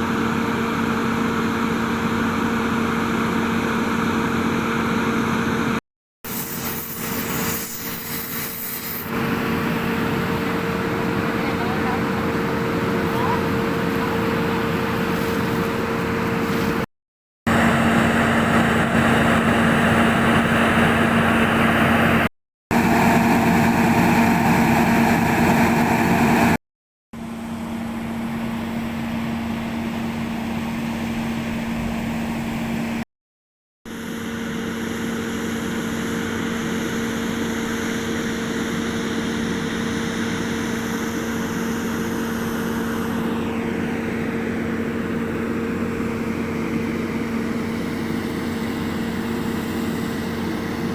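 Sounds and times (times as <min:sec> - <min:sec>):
motor running steadily: 0:00.0 - 0:16.9, 0:17.5 - 0:26.5, 0:33.9 - 0:50.9.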